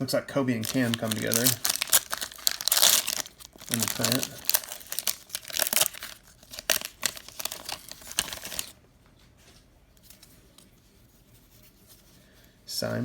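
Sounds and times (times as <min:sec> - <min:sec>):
plastic wrapper tearing and crinkling: 0:00.6 - 0:08.8.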